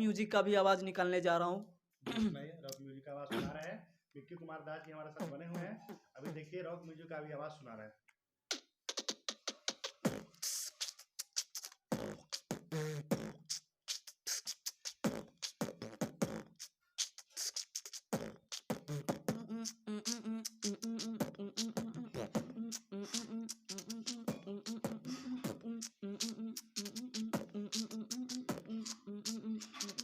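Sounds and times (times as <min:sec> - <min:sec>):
man beatboxing: 0:05.1 - 0:06.4, 0:08.5 - 0:30.0.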